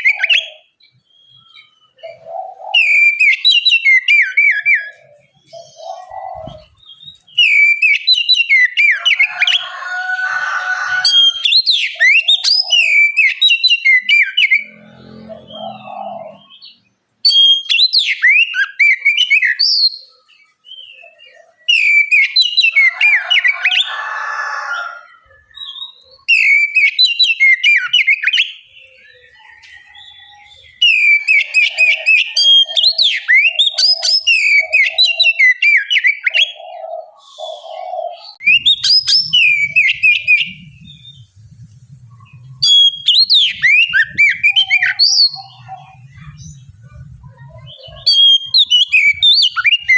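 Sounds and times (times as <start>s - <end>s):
bird singing whistles and chirps: 0.0s - 9.4s, 15.4s - 23.9s, 25.2s - 41.4s, 42.2s - 46.8s, 47.6s - 49.9s.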